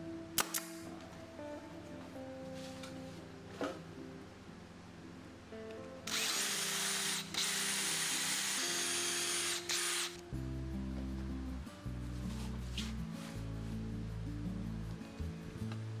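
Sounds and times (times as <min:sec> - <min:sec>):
power drill whining: 0:06.1 - 0:10.2.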